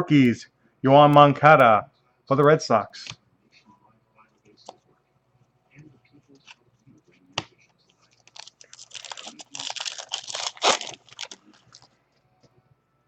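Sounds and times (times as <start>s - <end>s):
wrapper crinkling and tearing: 8.2s - 11.9s.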